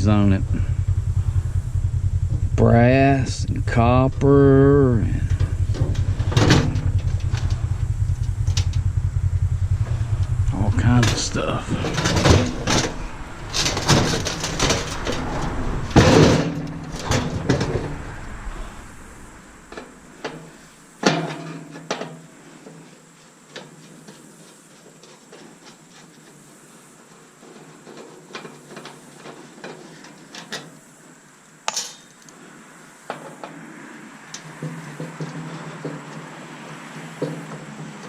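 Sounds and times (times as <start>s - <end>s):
metal parts and tools clattering: 31.7s - 32.2s.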